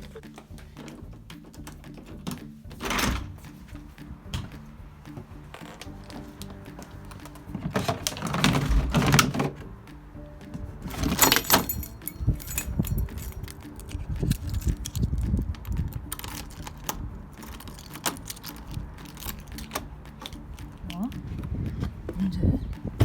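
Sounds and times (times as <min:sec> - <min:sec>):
clicks and knocks: 0:04.3 - 0:09.7
keys jangling: 0:10.8 - 0:20.8.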